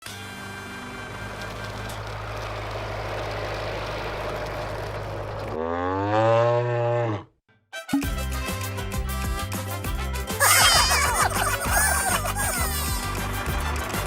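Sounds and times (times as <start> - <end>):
music: 0.0 - 2.1, 7.5 - 14.0
rumbling with low hum: 1.3 - 5.7.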